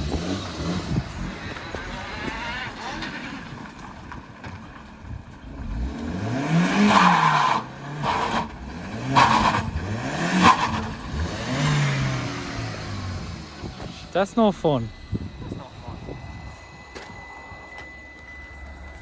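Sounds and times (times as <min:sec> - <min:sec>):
car engine revving hard: 0:00.0 - 0:03.6, 0:05.5 - 0:16.6.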